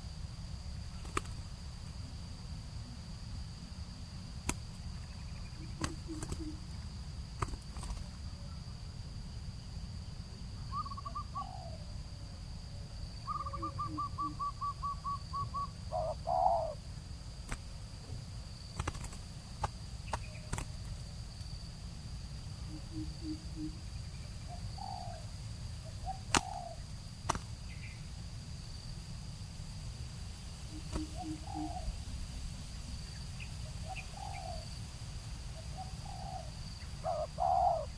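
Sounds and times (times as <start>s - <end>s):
high insect whine: 0.0s - 37.9s
doves cooing: 5.5s - 8.6s, 10.7s - 11.9s, 13.3s - 16.8s, 24.5s - 27.4s, 30.7s - 32.0s, 33.8s - 34.7s, 35.6s - 37.9s.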